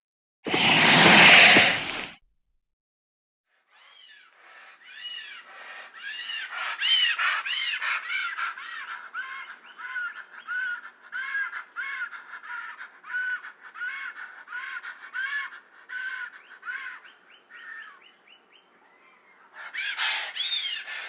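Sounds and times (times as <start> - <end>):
harsh squawking caws: 3.6 - 18.0, 18.9 - 21.0.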